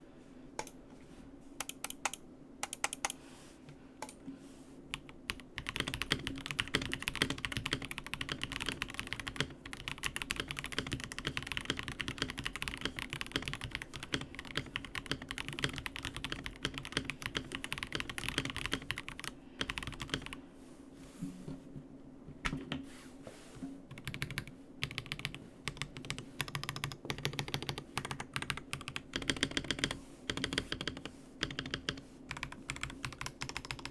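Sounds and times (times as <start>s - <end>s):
typing on mechanical keyboard: 1.6s - 3.2s, 4.9s - 20.4s, 23.9s - 33.9s.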